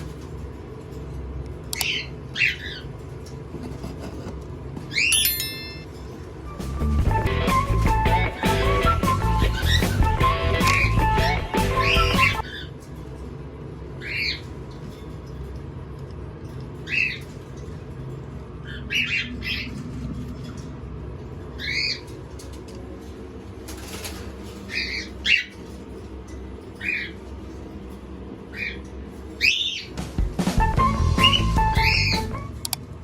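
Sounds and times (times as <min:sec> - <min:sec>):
cockatiels chirping: 0:09.4 - 0:12.7, 0:18.6 - 0:19.8, 0:21.6 - 0:22.1, 0:24.7 - 0:25.6, 0:28.5 - 0:30.0, 0:31.2 - 0:32.3.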